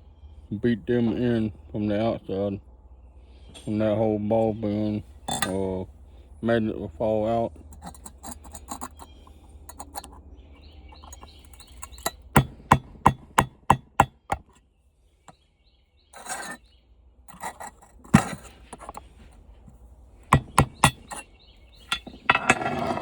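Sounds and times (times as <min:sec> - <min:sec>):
metal scrape: 0:05.2 - 0:05.7, 0:07.7 - 0:10.2, 0:10.9 - 0:13.4, 0:16.2 - 0:16.7, 0:17.3 - 0:19.7, 0:20.3 - 0:23.0
hammer striking a screwdriver: 0:11.0 - 0:14.6, 0:20.3 - 0:21.2.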